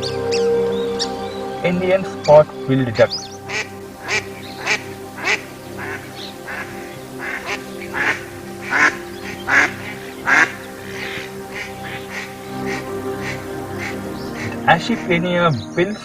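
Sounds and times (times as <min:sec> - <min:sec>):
background music: 0:00.0 - 0:16.0
duck quacking: 0:02.9 - 0:15.1.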